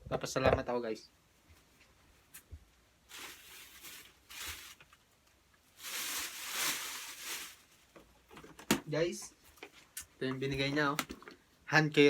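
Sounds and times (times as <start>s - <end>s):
bags rustling: 3.1s - 5.0s, 5.7s - 7.9s.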